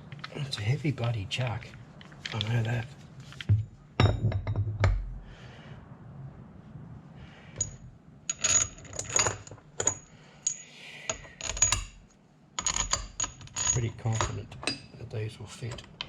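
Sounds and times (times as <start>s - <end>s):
metallic clinks of steel bolts: 7.6s - 15.0s.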